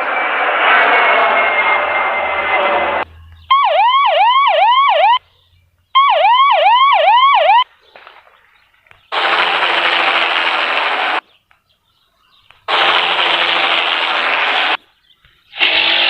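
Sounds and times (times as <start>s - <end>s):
electronic siren wailing: 0.0s - 5.2s, 6.0s - 7.6s.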